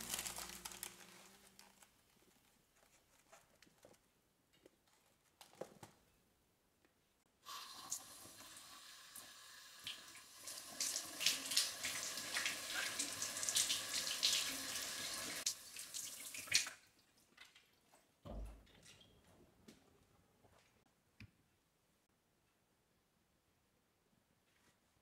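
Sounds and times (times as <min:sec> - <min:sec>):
tap water running into sink: 0:07.5 - 0:16.8.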